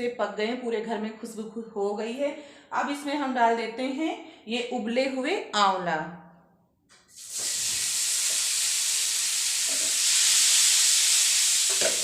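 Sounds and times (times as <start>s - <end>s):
food sizzling in hot oil: 7.1s - 12.0s.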